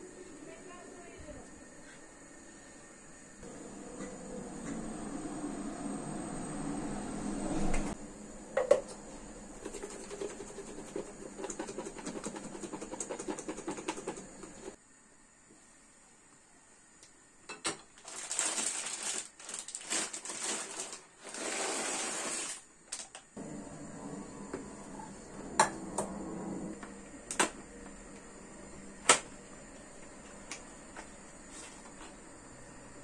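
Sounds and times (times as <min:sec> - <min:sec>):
rustling and scraping: 0:30.9 - 0:32.2.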